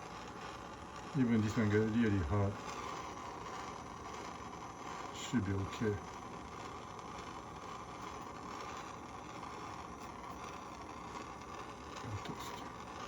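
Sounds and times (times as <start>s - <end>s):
gas torch flame hissing: 0.0s - 13.0s.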